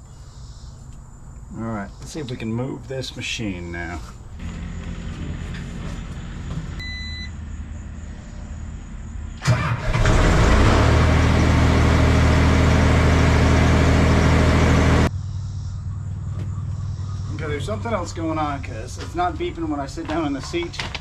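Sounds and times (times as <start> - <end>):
skid steer engine running: 4.4 - 7.2, 9.4 - 15.1
short electronic beep: 6.8 - 7.3.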